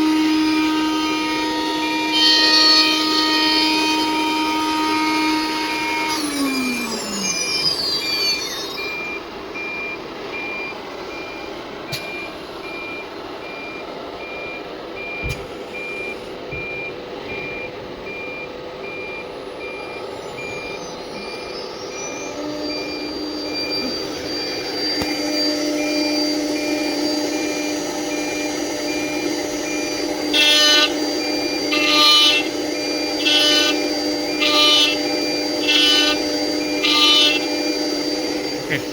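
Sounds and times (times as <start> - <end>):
machine humming: 0.0 - 38.9
milling machine spindle whine: 0.0 - 38.9
short electronic beeps: 5.8 - 32.5.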